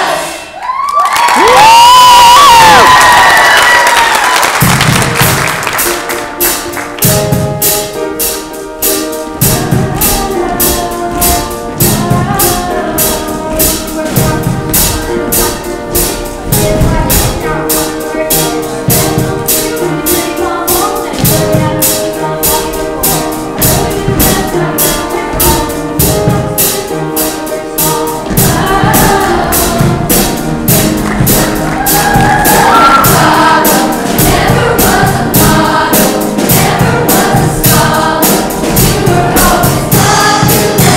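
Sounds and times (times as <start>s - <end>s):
choir singing: 0.0s - 0.6s, 9.3s - 40.9s
upbeat music accompaniment: 0.0s - 40.9s.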